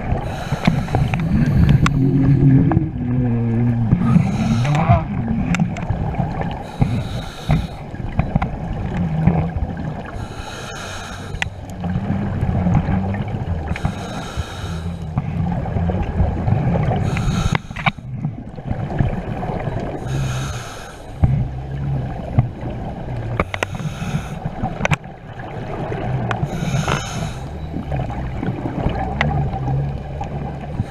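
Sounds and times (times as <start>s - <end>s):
bubbling exhalations: 0.0s - 7.9s
steady low rumble: 0.0s - 30.9s
diver breathing through regulator: 0.2s - 3.0s, 3.9s - 5.2s, 6.5s - 8.0s, 10.1s - 11.7s, 13.6s - 15.3s, 17.0s - 18.1s, 20.0s - 21.6s, 23.4s - 24.7s, 26.4s - 27.6s.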